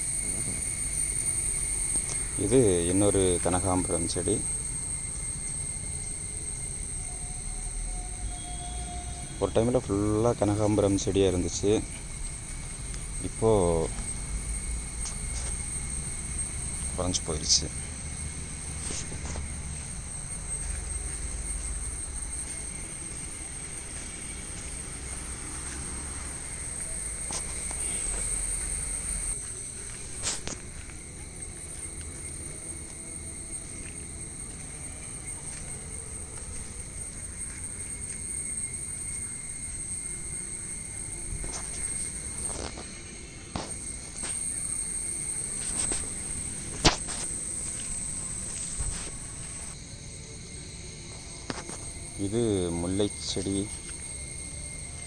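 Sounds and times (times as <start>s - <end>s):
insects shrilling: 0.0s - 55.0s.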